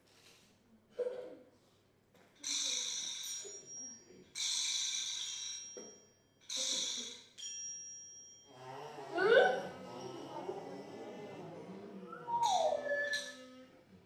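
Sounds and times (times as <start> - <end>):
faint whistling tones: 12.0 - 13.6.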